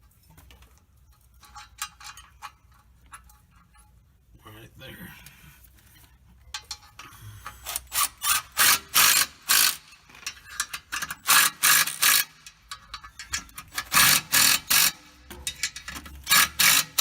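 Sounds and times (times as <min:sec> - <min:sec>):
ratchet wrench clicking: 0:06.6 - 0:17.0.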